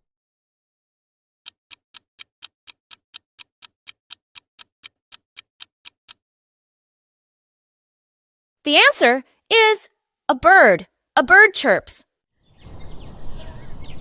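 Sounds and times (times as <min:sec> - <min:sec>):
clock ticking: 0:01.5 - 0:06.2.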